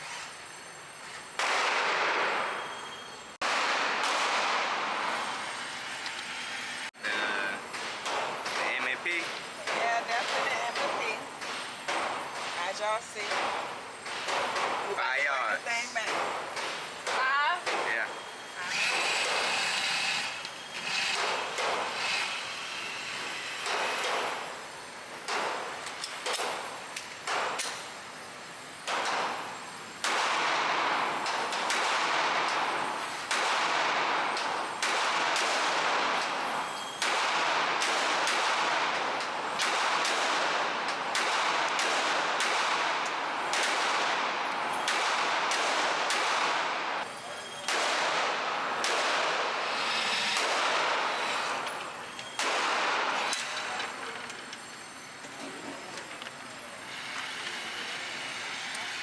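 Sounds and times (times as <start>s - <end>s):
handgun shots with echo: 37.0s - 39.0s, 39.6s - 44.2s, 44.8s - 46.7s, 47.7s - 49.6s, 52.4s - 53.6s.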